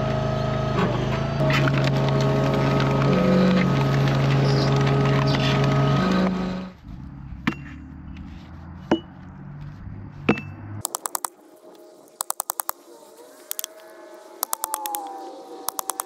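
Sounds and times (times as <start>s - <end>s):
engine running: 0.0s - 11.3s.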